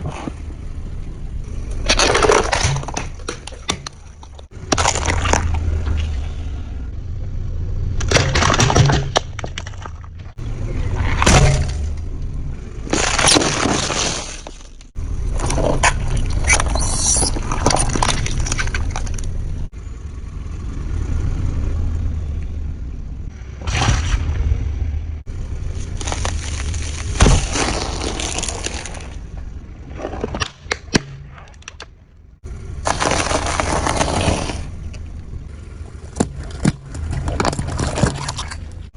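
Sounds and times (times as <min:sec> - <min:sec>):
low rumble: 0:00.0 - 0:38.9
objects cracking under vehicle: 0:01.6 - 0:06.3, 0:08.0 - 0:19.8, 0:25.6 - 0:35.1, 0:35.8 - 0:38.9.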